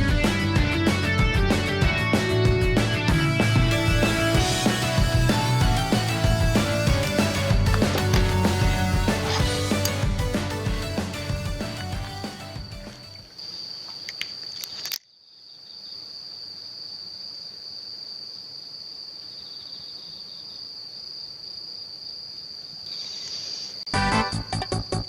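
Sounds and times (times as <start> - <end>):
loud rhythmic pulsing: 0.0 - 13.2
insects trilling: 12.2 - 25.0.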